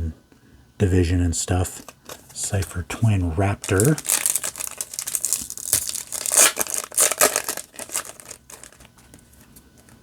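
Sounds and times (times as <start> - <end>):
foil wrapper crinkling: 3.6 - 9.0.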